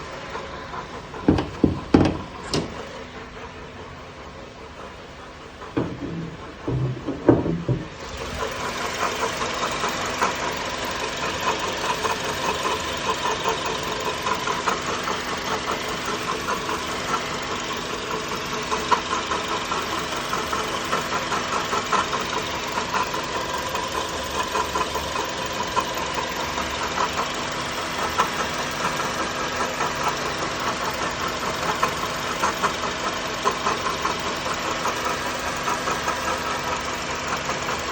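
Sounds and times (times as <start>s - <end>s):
car engine idling: 0.0s - 37.9s
engine knocks: 0.1s - 4.0s, 4.7s - 37.9s
fast ticking rattle: 8.0s - 37.9s.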